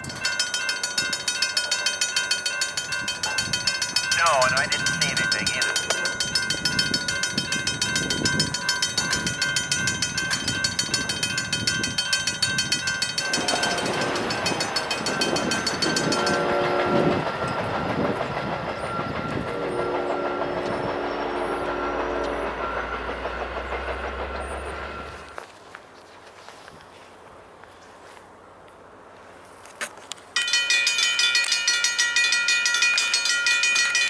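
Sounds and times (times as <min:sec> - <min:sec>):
crossing warning bell ringing: 0:00.0 - 0:25.4, 0:30.4 - 0:34.0
train rumbling: 0:00.0 - 0:25.5
locomotive horn: 0:13.2 - 0:17.4, 0:19.5 - 0:23.1.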